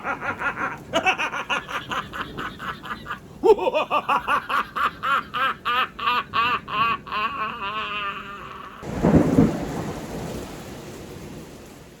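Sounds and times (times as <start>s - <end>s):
steady rain: 0.0s - 12.0s
thunder clap: 8.8s - 12.0s.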